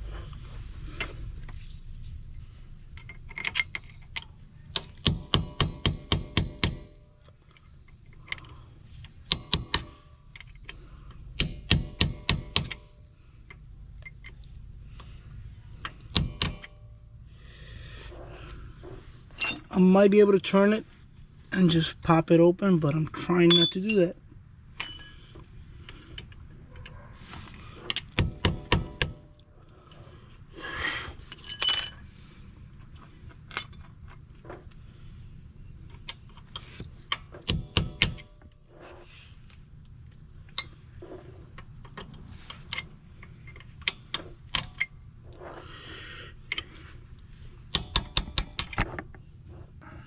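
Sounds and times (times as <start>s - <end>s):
metal clinks: 19.3s - 20.1s, 23.4s - 25.4s, 31.3s - 32.6s, 33.4s - 34.3s.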